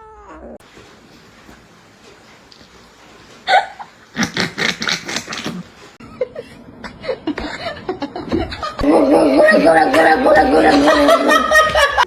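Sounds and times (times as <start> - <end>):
person laughing: 3.5 - 3.9, 6.0 - 12.0.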